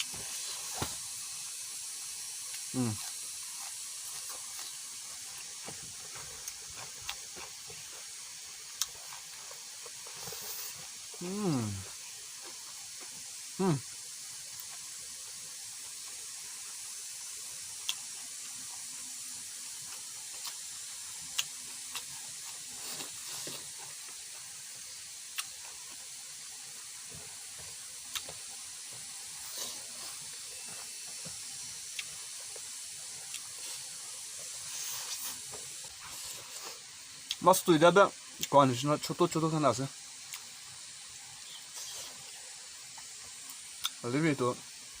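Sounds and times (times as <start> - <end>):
steady high hiss: 0.0 - 45.0.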